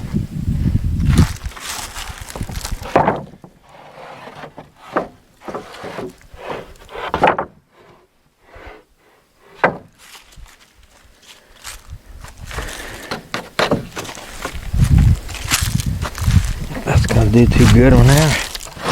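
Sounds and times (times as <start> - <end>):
boards scraping: 1.1 - 10.3, 12.5 - 18.9
wooden boards knocking: 2.8 - 3.6, 7.0 - 7.6, 9.6 - 10.0, 13.0 - 14.6.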